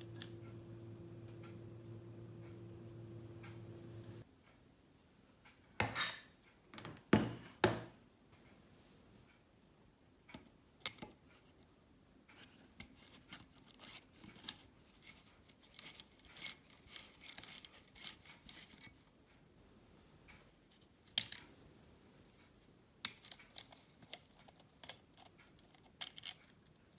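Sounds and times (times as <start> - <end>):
small clicks and rubbing: 0.0 - 4.2, 12.3 - 19.4, 20.3 - 26.9.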